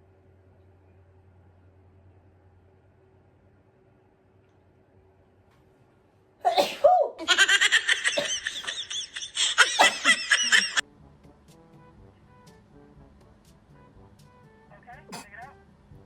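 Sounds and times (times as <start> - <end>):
person sneezing: 6.4 - 7.2, 9.8 - 10.1
high-pitched pulsing laughter: 7.1 - 10.8.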